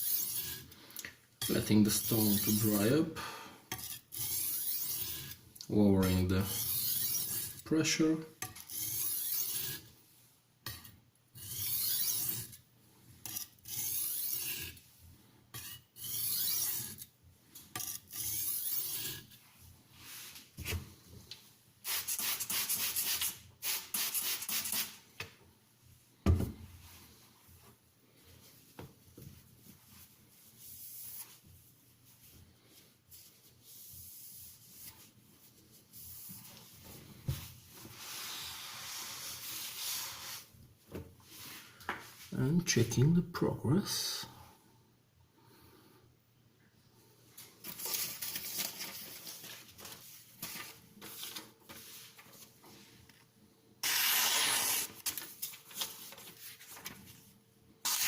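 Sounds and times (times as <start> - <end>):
knife scraping on sharpening stone: 0.0 - 0.7, 3.7 - 5.4, 6.0 - 7.6, 8.4 - 9.9, 10.6 - 12.6, 13.2 - 14.8, 15.5 - 17.1, 17.8 - 19.4.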